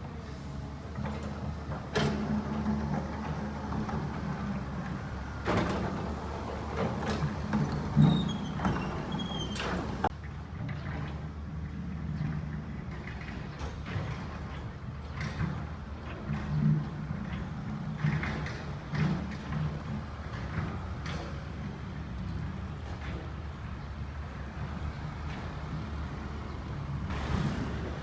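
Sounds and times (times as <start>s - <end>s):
excavator diesel engine running: 0.0s - 10.1s.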